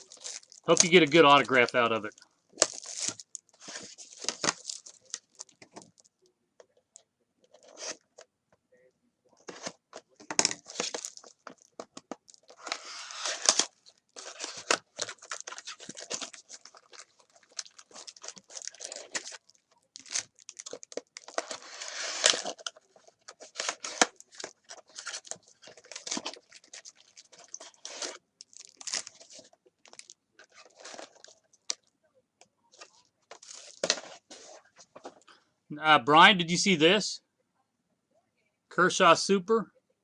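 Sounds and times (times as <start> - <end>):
card pack wrappers tearing: 0.0 - 5.6, 9.5 - 31.8, 32.8 - 34.6.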